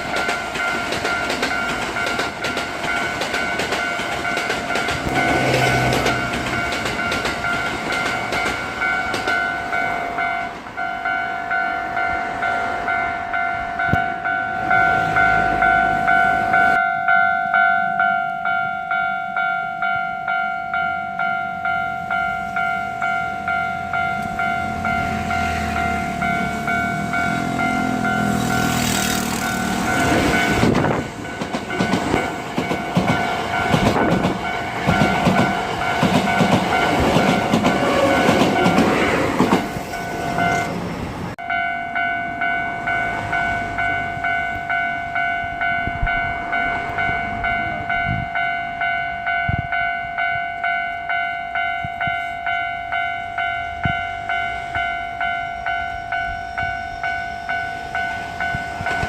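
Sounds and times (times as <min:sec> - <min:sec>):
train wheels clattering on rails: 0:00.0 - 0:10.8, 0:23.4 - 0:40.8, 0:57.6 - 0:59.0
level crossing warning bell: 0:00.0 - 0:40.8, 0:41.4 - 0:59.0.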